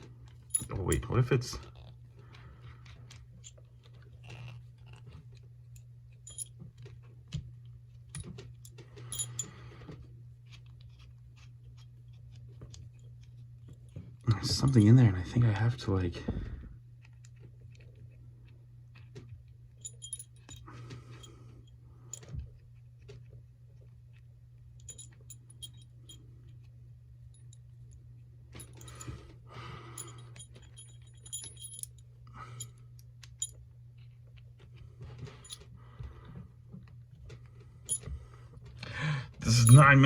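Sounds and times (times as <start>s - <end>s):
low steady hum: 0.0s - 40.0s
metallic clicks and clinks: 0.3s - 1.9s, 8.1s - 9.6s, 19.8s - 21.3s, 24.8s - 26.2s, 29.9s - 32.0s, 39.4s - 40.0s.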